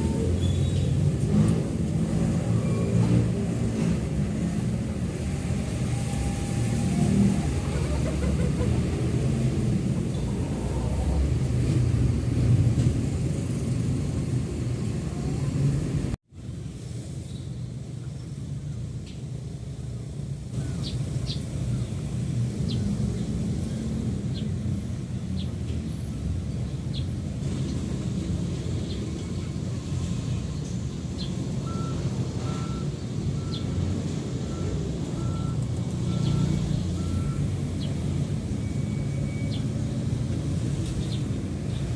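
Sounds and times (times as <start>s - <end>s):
reversing alarm beeping: 0.0s - 0.4s, 5.3s - 7.9s, 31.6s - 37.5s, 38.5s - 39.8s
vehicle engine rumbling: 0.0s - 41.9s.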